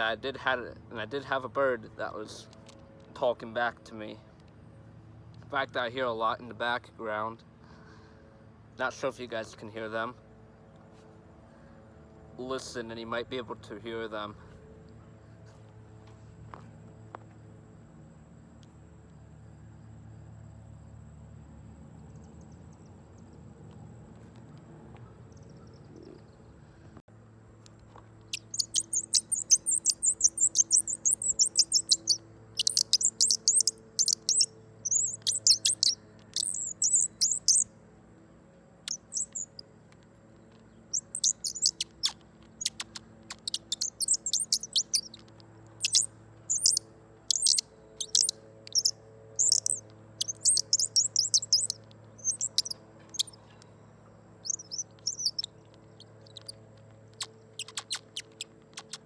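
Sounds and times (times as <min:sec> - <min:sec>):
bird caller chirping: 0:28.3 - 0:37.7, 0:38.9 - 0:39.6, 0:40.9 - 0:53.6, 0:54.4 - 0:59.0.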